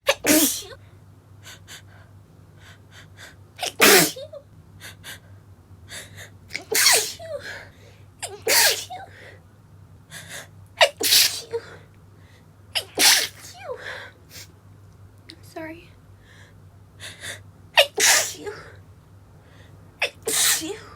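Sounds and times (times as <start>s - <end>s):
woman sneezing: 0.1s - 0.8s, 3.6s - 4.3s, 6.6s - 7.4s, 8.2s - 9.0s, 10.8s - 11.6s, 12.8s - 13.7s, 17.8s - 18.6s, 20.0s - 20.9s.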